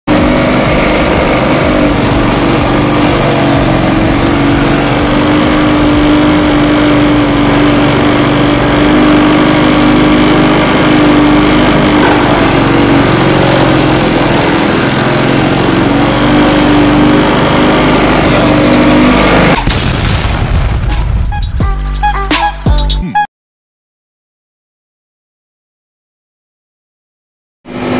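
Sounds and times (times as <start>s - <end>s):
chaff cutter machine humming: 0.1s - 19.6s, 27.7s - 27.9s.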